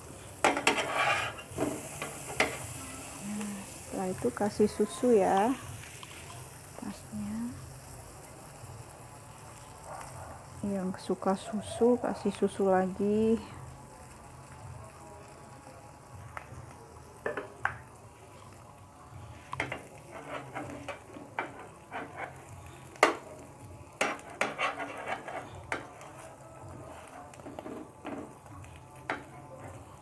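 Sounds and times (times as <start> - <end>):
bread sizzling in a pan: 0.0 - 30.0
utensil tapping and scraping pan: 0.4 - 2.7, 19.5 - 26.3, 27.0 - 28.4.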